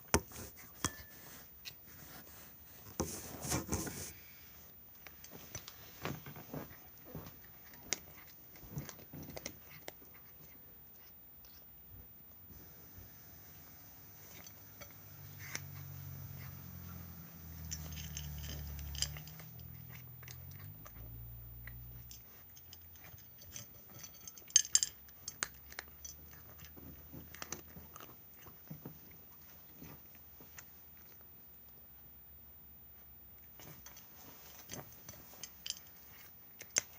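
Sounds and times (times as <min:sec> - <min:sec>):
cat chewing and crunching food: 0:00.0 - 0:36.9.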